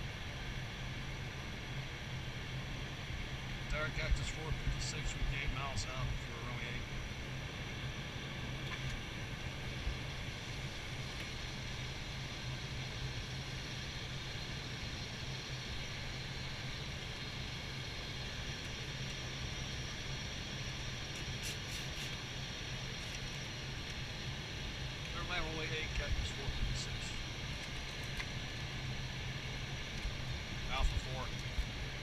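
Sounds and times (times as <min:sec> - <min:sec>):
low hum: 0:00.0 - 0:32.0
cockpit hiss: 0:21.1 - 0:22.3.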